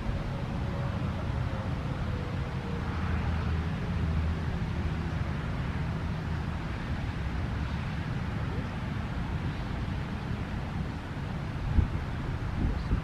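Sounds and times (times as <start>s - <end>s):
distant siren: 0.0s - 5.3s
low outdoor rumble: 0.0s - 13.0s.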